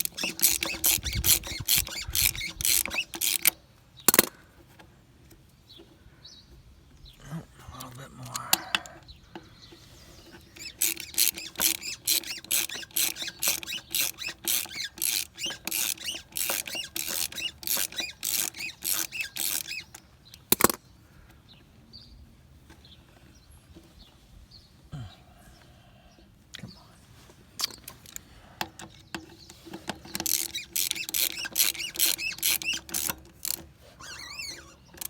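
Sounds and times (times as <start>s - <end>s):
ratchet wrench clicking: 0.0s - 4.3s, 10.3s - 20.8s, 27.6s - 35.0s
sharp metal click: 0.0s - 4.4s, 10.4s - 20.8s, 28.8s - 35.0s.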